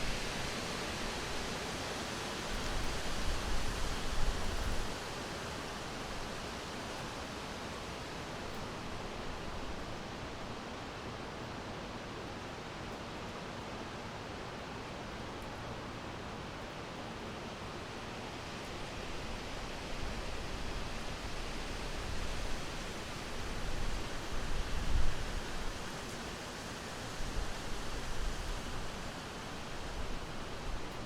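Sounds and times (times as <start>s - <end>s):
wind rustling through trees: 0.0s - 31.0s.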